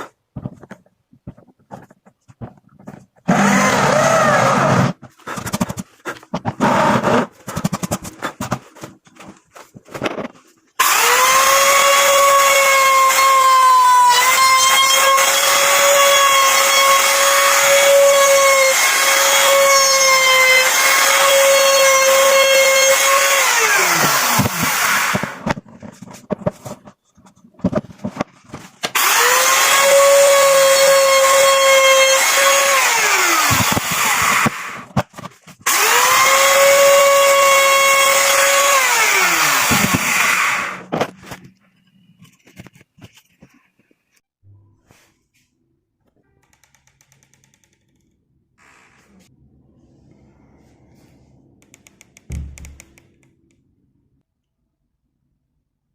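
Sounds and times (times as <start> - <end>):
power tool motor whining: 28.9 - 34.8.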